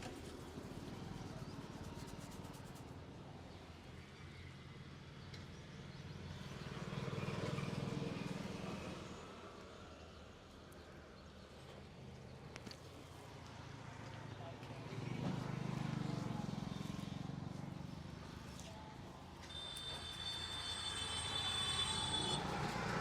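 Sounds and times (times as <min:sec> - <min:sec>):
street traffic noise: 0:00.0 - 0:23.0
vehicle passing: 0:19.5 - 0:23.0.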